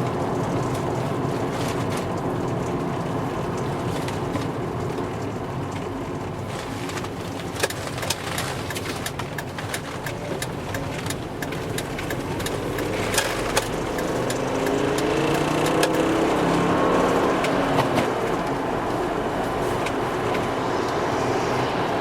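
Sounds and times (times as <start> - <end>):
car engine running: 0.0 - 22.0
sharp clicks: 9.4 - 16.1.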